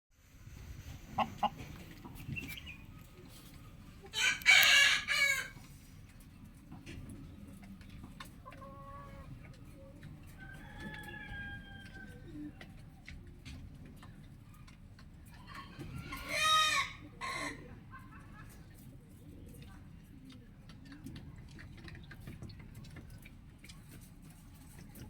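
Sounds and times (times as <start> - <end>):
low steady background rumble: 0.2 - 25.0
rooster clucks: 0.7 - 5.7, 7.6 - 12.7, 15.3 - 18.8
rooster crowing: 4.2 - 5.6.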